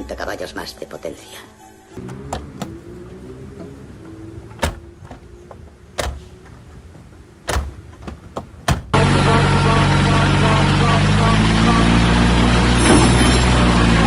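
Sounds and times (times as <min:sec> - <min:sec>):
sharp knocks and clanks: 0:02.0 - 0:09.0.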